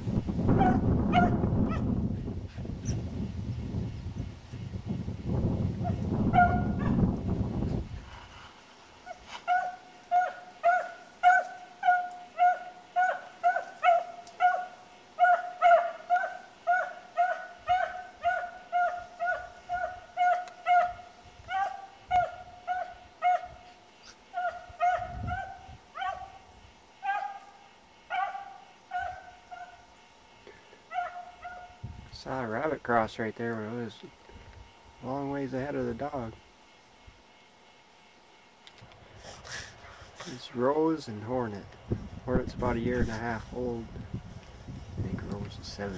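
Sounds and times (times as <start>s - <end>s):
beagle baying: 0.5s - 1.9s, 5.8s - 7.0s, 9.0s - 23.7s, 24.3s - 26.4s, 27.0s - 29.9s, 30.9s - 31.8s.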